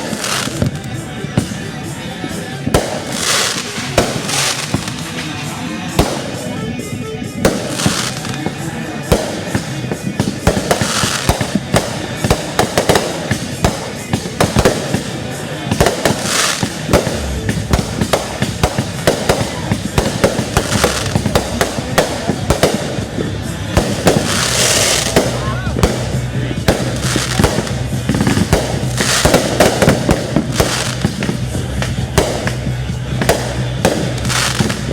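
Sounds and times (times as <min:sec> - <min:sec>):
fireworks bangs and pops: 0:00.0 - 0:34.9
fireworks hissing crackle: 0:00.0 - 0:34.9.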